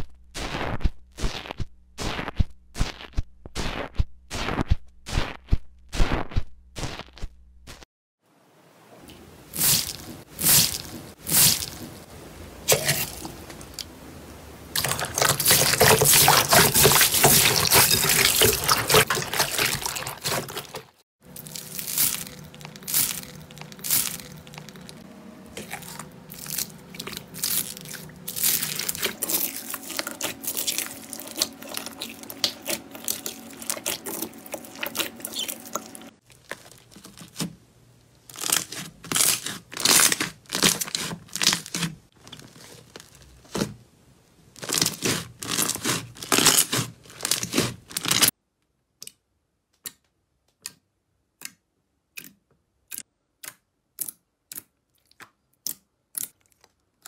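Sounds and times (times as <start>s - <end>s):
slime crackling and crunching: 14.8s - 25.0s, 25.6s - 37.5s, 38.2s - 43.6s, 44.6s - 48.3s.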